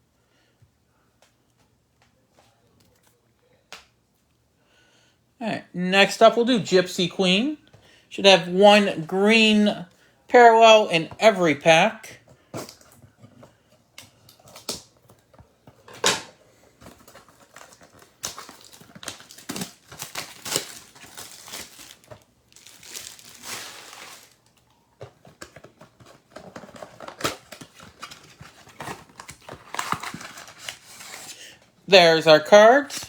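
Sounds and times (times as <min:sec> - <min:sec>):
cardboard rustling: 0:12.2 - 0:31.8
plastic wrap crinkling and tearing: 0:16.8 - 0:31.6, 0:32.6 - 0:33.0.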